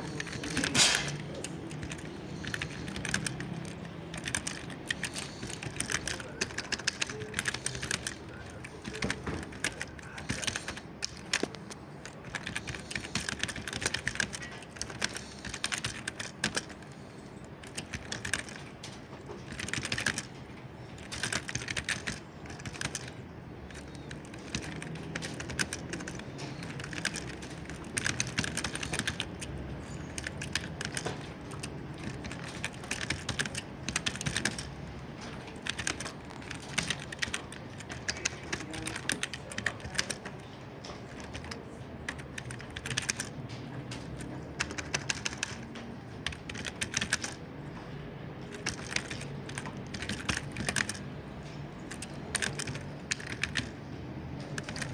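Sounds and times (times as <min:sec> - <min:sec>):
keyboard key clicks: 0:00.0 - 0:54.9
low background hum: 0:00.0 - 0:54.9.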